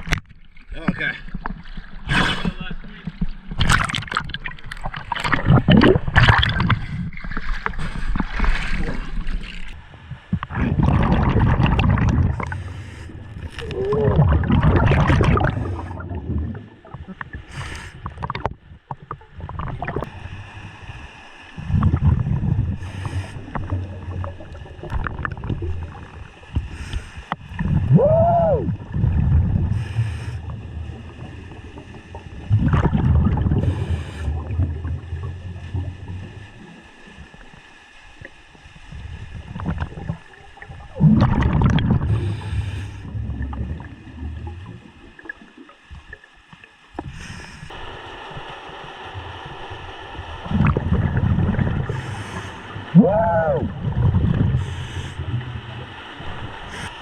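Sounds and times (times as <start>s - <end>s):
exhaled bubbles rumbling: 0.0s - 57.0s
diver breathing through regulator: 2.0s - 2.6s, 12.3s - 14.3s, 15.3s - 16.2s, 17.4s - 18.2s, 22.7s - 23.9s, 26.6s - 27.7s, 29.6s - 30.7s, 33.4s - 34.8s, 42.0s - 43.4s, 47.0s - 47.8s, 51.8s - 52.9s, 54.2s - 55.6s, 56.4s - 57.0s.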